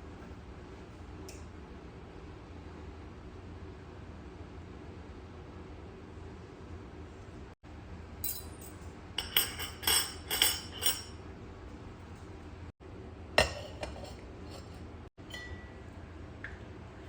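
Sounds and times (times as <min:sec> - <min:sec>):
glass and dishware clinking: 0:08.2 - 0:11.2, 0:13.4 - 0:15.8.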